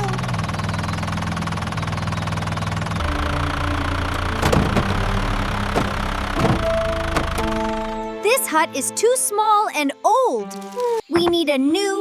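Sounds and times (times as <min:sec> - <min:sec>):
vehicle engine running: 0:00.0 - 0:08.2
sharp knocks: 0:04.4 - 0:05.1, 0:05.7 - 0:07.6.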